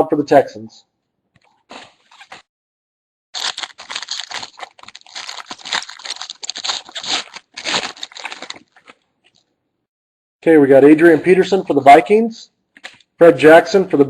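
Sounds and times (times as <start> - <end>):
card pack wrapper tearing: 3.4 - 9.4.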